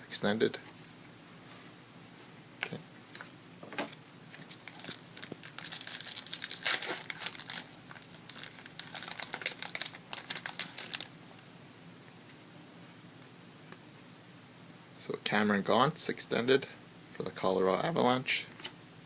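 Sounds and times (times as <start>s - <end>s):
plastic wrapper tearing and crinkling: 4.3s - 11.2s.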